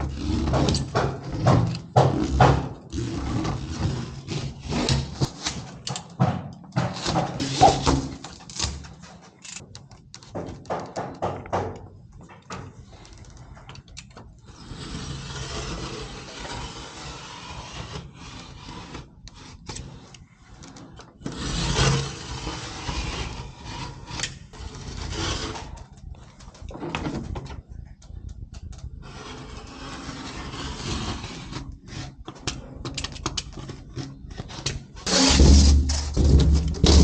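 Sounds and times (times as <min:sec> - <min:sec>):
scraping and rubbing against board: 0:00.0 - 0:11.8, 0:12.6 - 0:37.0
knocks and taps on wall boards: 0:10.3 - 0:12.7.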